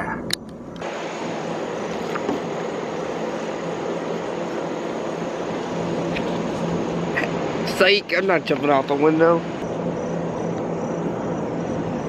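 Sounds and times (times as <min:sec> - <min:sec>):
steady rushing noise: 0:00.6 - 0:12.0.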